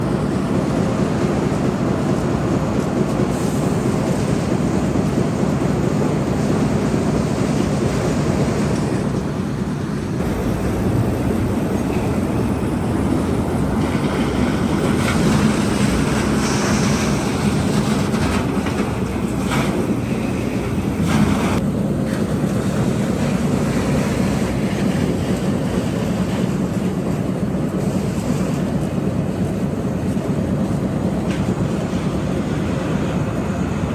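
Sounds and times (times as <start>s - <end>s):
wood chipper drone: 7.7s - 24.8s.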